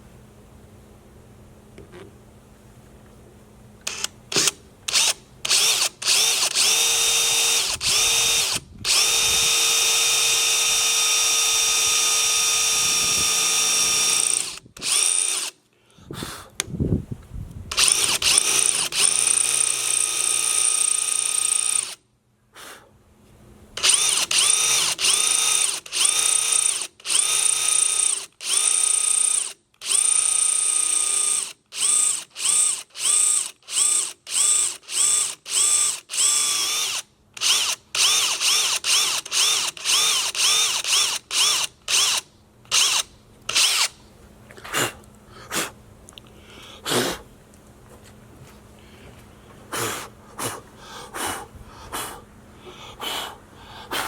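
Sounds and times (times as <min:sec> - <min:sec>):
power drill motor whine: 0:03.9 - 0:15.6, 0:17.7 - 0:22.0, 0:23.8 - 0:44.0.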